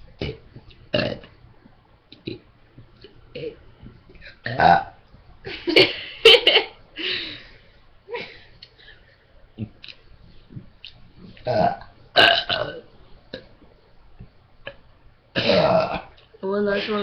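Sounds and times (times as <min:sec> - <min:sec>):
people burping loudly: 0:00.2 - 0:01.3, 0:04.4 - 0:04.9, 0:11.4 - 0:12.8, 0:15.4 - 0:16.2.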